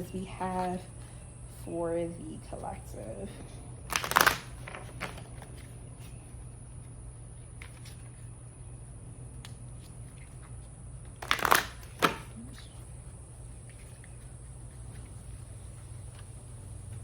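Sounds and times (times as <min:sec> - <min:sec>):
steady low hum: 0:00.0 - 0:17.0
cards shuffling: 0:03.8 - 0:06.4, 0:07.5 - 0:08.3, 0:09.4 - 0:16.6.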